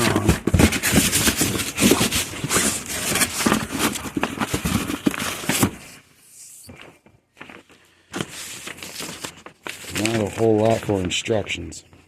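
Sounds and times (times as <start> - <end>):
packaging rustling and knocking: 0.0 - 6.0.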